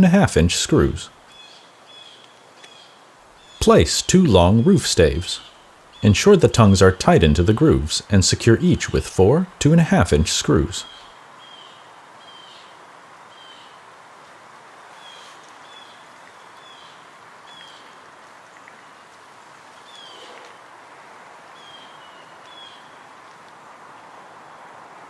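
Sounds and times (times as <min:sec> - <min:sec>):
outdoor hiss: 0:00.0 - 0:25.0
bird chirping: 0:03.4 - 0:11.7.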